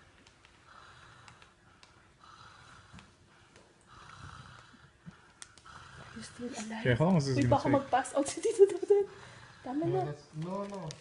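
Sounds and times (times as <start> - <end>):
hushed breaths: 0.0 - 11.0
small clicks: 1.2 - 2.0.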